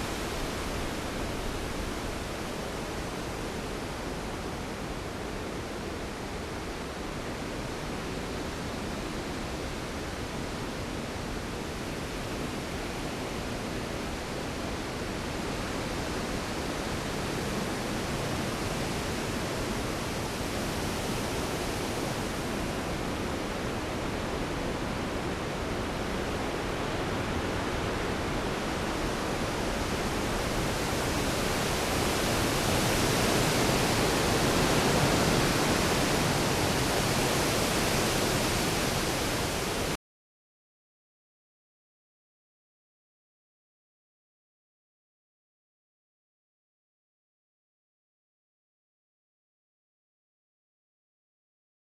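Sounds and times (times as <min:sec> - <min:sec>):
rain: 0:00.0 - 0:40.0
wind: 0:00.0 - 0:40.0.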